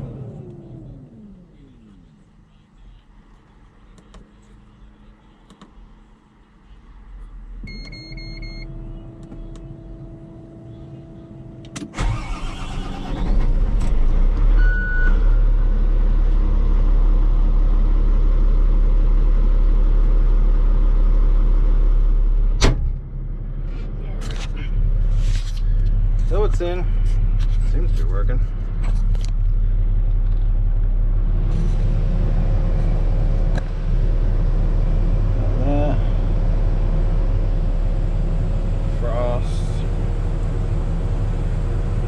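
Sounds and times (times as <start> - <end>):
short beep: 7.7 - 8.8, 14.6 - 15.2
diesel engine cranking and running: 11.7 - 16.1
rising whine: 23.2 - 42.0.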